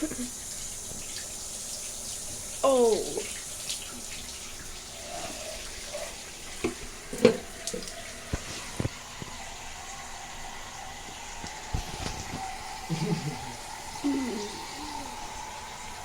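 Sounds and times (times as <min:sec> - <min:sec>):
shower water running: 0:00.0 - 0:16.0.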